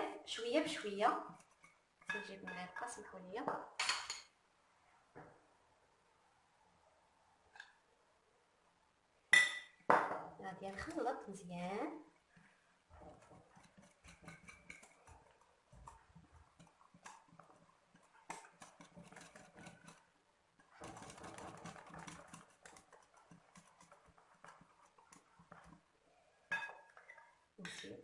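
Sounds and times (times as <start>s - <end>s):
spoon scraping a mixing bowl: 12.4s - 25.9s.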